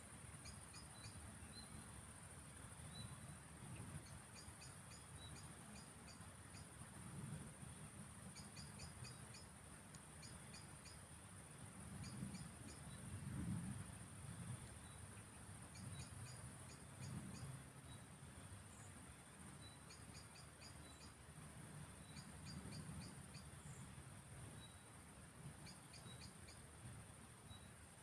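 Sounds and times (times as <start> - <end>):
insect trill: 0.3 - 2.1, 3.9 - 6.8, 7.7 - 9.5, 10.2 - 18.1, 18.7 - 21.2, 21.9 - 24.0, 25.6 - 26.8.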